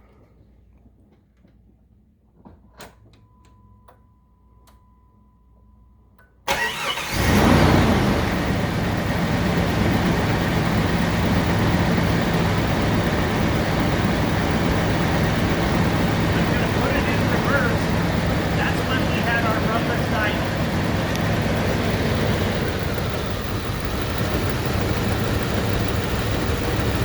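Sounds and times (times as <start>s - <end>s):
engine cranking and idling: 6.5s - 27.0s.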